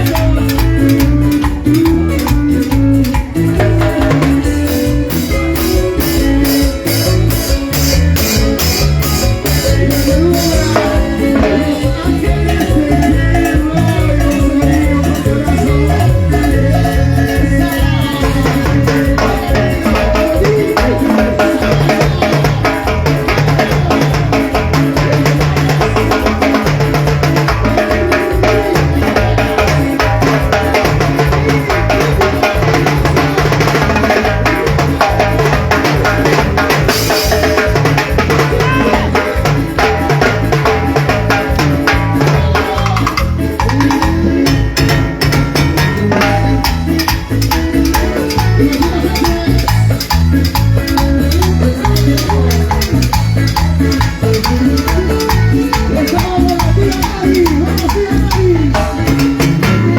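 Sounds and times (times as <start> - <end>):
latin dance music: 0.0 - 59.9.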